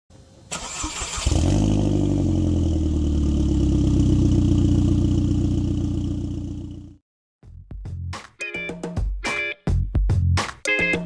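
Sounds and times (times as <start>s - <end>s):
engine cranking: 0.6s - 1.4s
engine running with deep drone: 1.3s - 7.0s.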